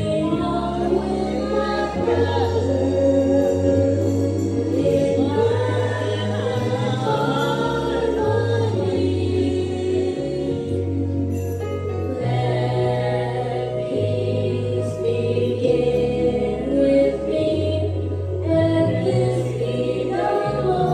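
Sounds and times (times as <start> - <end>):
group of voices singing: 0.0 - 20.9
held low bass notes: 0.0 - 20.9.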